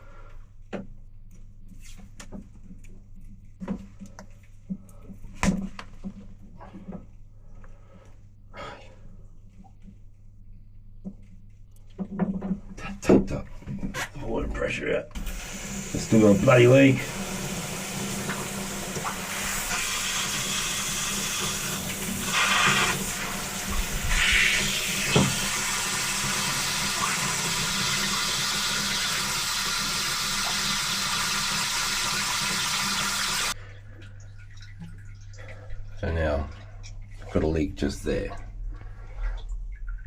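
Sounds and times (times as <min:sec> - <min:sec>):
water hissing from leaking pipe: 0:14.2 - 0:39.6.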